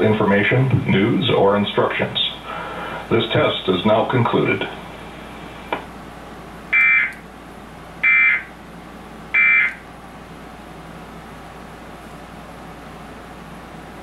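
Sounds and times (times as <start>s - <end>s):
buzzing data bursts: 6.8s - 7.2s, 8.0s - 8.5s, 9.4s - 9.8s.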